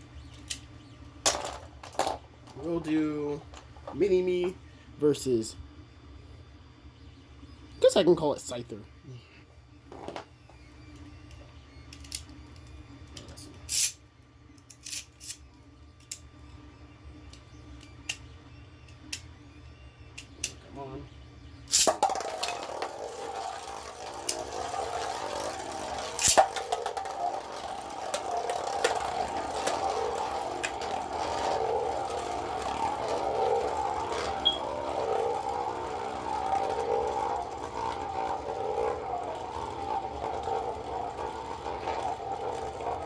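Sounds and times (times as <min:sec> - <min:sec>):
spinning tops whirring and scraping: 0:00.0 - 0:05.6, 0:09.9 - 0:14.0, 0:14.6 - 0:16.4, 0:21.6 - 0:43.0
spinning tops clacking together: 0:00.4 - 0:04.1, 0:13.7 - 0:14.0, 0:21.7 - 0:43.0.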